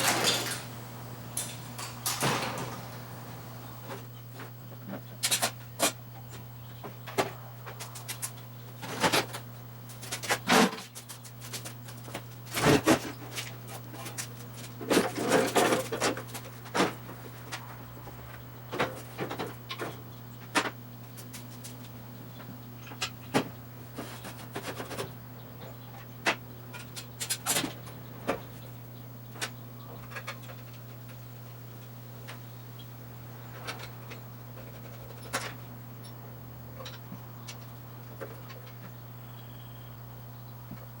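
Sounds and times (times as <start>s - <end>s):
objects clunking and knocking: 0.0s - 21.8s, 22.8s - 28.6s
steady low hum: 0.0s - 41.0s.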